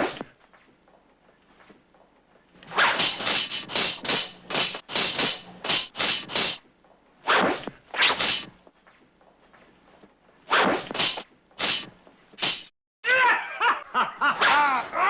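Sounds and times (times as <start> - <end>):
swords striking and scraping: 2.6 - 6.6, 7.2 - 8.5, 10.5 - 12.7.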